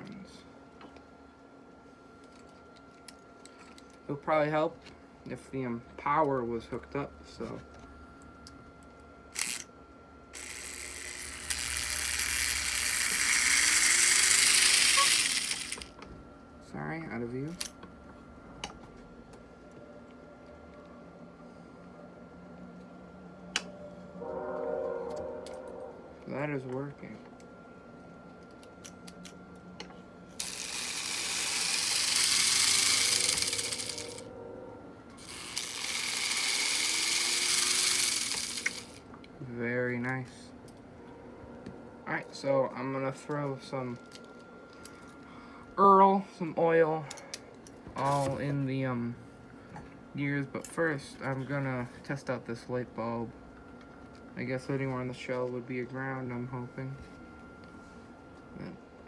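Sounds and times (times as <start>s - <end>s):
toy train motor whirring rattle: 9.3s - 9.7s, 10.3s - 16.0s, 30.4s - 34.3s, 35.2s - 39.1s.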